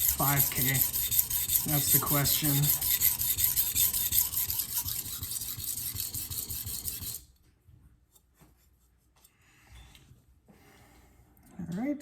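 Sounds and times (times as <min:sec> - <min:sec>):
blade grinding on stone: 0:00.0 - 0:07.3.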